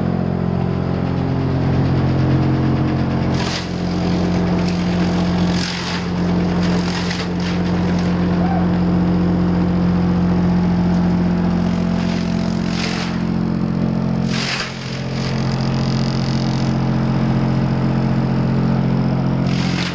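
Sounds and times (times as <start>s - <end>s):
wood chipper humming: 0.0s - 19.9s.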